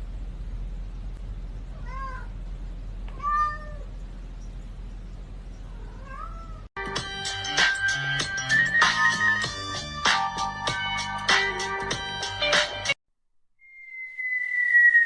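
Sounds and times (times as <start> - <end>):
steady low hum: 0.0 - 6.7
cat meowing: 1.7 - 2.4, 3.1 - 3.9, 5.7 - 6.7.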